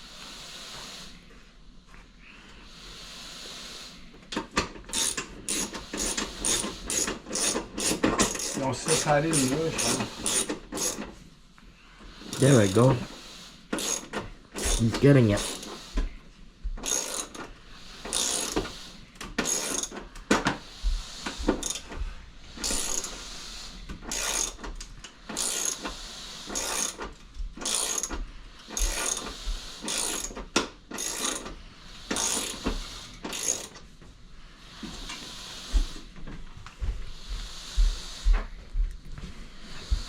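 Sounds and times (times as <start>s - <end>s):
ratchet wrench ratcheting: 4.9s - 11.1s, 13.8s - 15.8s, 16.8s - 18.8s, 19.4s - 20.0s, 21.4s - 21.9s, 22.6s - 23.3s, 24.1s - 24.6s, 25.3s - 33.8s.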